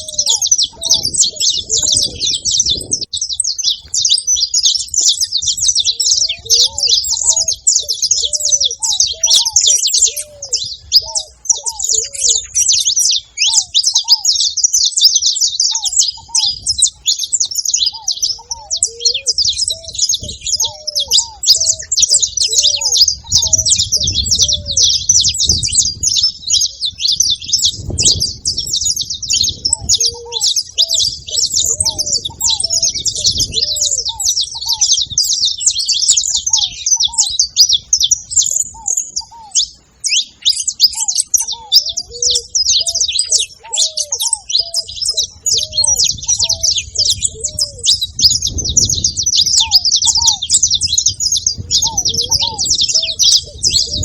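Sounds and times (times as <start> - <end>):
finches chirping and singing: 0.0 - 54.0
low rumbling: 45.0 - 49.6.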